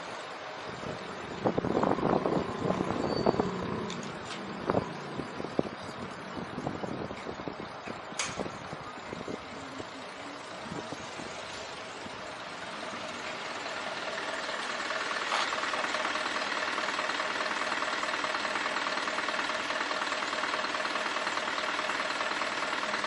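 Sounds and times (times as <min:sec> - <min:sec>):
car engine idling: 0:00.0 - 0:23.0
street traffic: 0:00.0 - 0:23.0
sharp click: 0:08.2 - 0:08.5.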